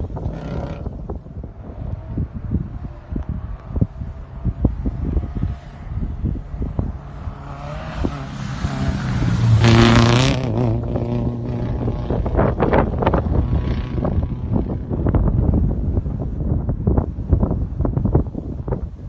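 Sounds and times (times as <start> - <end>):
car engine revving: 2.8 - 15.3.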